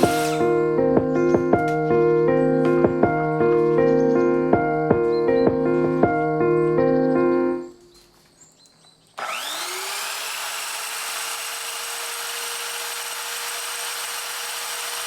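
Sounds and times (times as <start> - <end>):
power tool motor whining: 0.0 - 0.6, 9.2 - 15.0.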